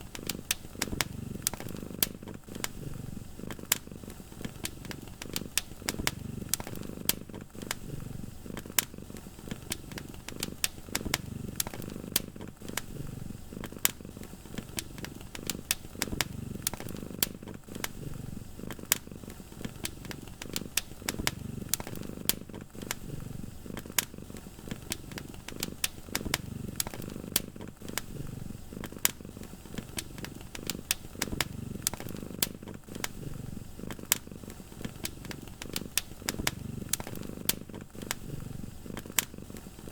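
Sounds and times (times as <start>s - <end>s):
cat purring: 0.0s - 39.9s
wood fire crackling and popping: 0.0s - 39.9s.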